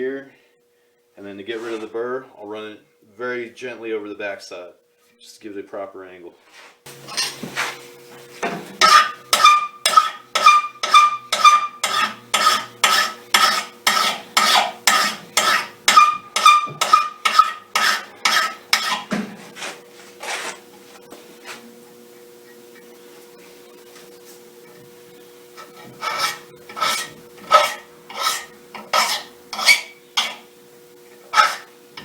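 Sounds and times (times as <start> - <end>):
file rasping on metal blade: 8.8 - 19.1, 25.6 - 30.5, 31.3 - 31.7.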